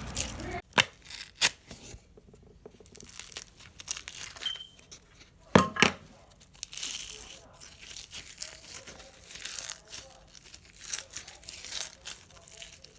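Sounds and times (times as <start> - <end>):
slime crackling and popping: 0.0 - 1.7, 2.8 - 4.5, 6.1 - 12.9.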